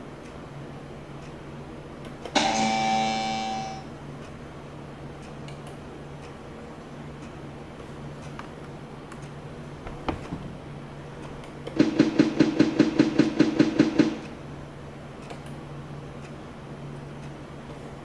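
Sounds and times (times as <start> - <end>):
steady low hum: 0.0 - 18.0
click: 5.2 - 5.8.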